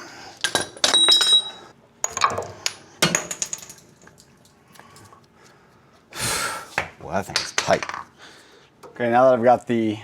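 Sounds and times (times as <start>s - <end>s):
steel tools clinking and knocking: 0.4s - 4.3s.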